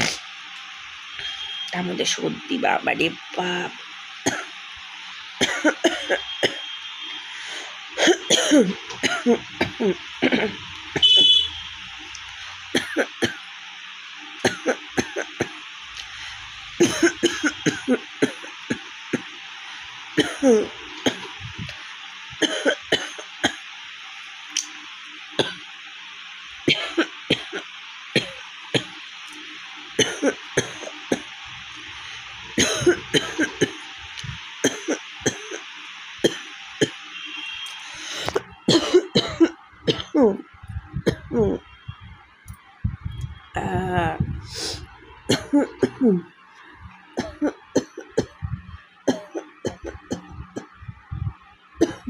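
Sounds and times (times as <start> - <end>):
steady hiss: 0.0 - 52.0
woman coughing: 5.4 - 6.6, 8.0 - 11.1, 12.8 - 13.4, 14.5 - 15.5, 16.8 - 18.8, 20.2 - 21.7, 22.4 - 23.6, 26.7 - 27.6, 30.0 - 31.2, 32.6 - 33.8, 38.1 - 40.4, 45.3 - 46.3, 47.2 - 48.5, 49.1 - 50.7.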